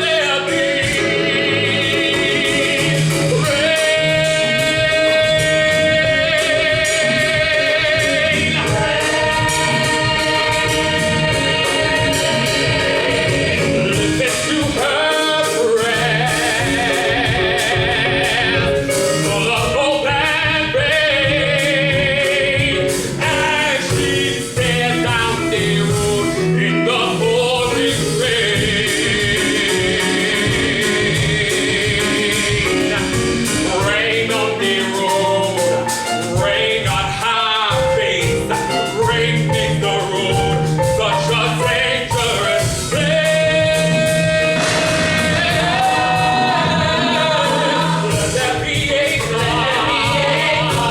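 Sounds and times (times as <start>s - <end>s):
ensemble singing with vibrato: 0.0s - 50.9s
instrumental accompaniment: 0.0s - 50.9s
steady low beat: 38.2s - 50.9s.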